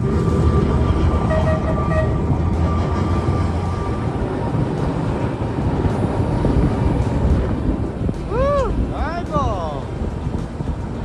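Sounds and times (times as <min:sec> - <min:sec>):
tram wheels and motors rumbling: 0:00.0 - 0:11.0
wind: 0:00.0 - 0:11.0.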